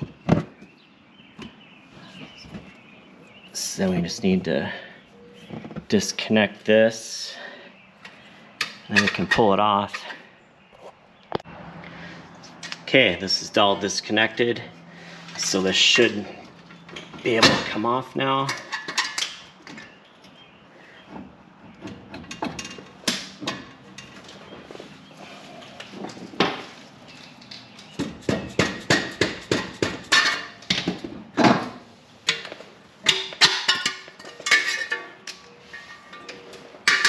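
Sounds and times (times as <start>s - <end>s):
sharp metal knocks: 27.9s - 35.2s.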